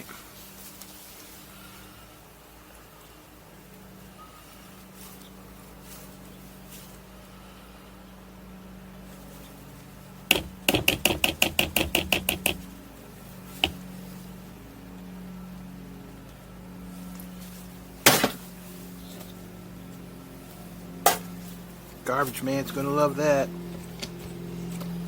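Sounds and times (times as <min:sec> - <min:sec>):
steady low hum: 0:01.3 - 0:25.0
sharp knocks: 0:10.3 - 0:12.7, 0:13.6 - 0:13.8.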